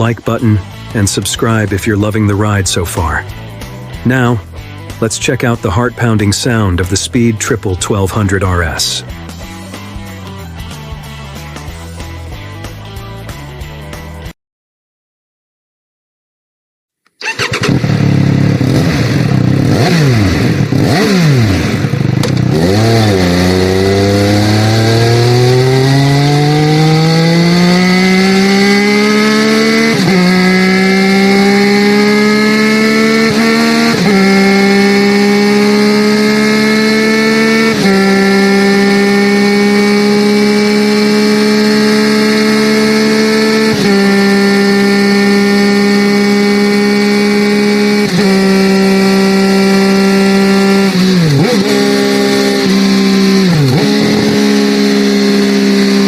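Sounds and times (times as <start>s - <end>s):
motorcycle engine revving: 17.2s - 56.0s.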